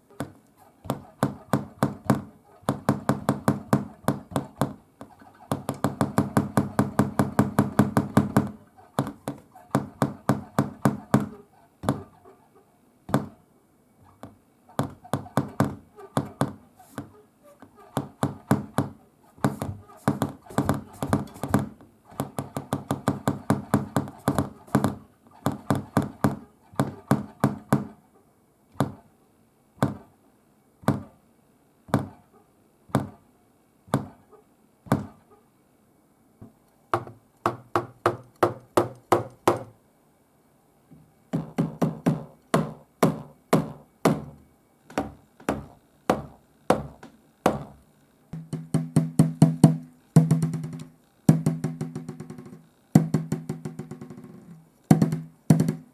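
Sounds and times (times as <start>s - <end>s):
drumsticks striking mesh drum pads: 48.4s - 55.9s.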